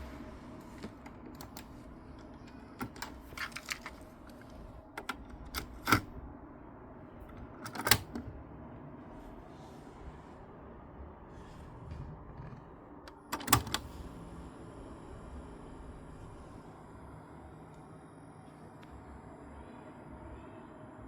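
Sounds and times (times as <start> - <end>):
cassette deck clicks: 5.0 - 6.1, 7.3 - 8.3.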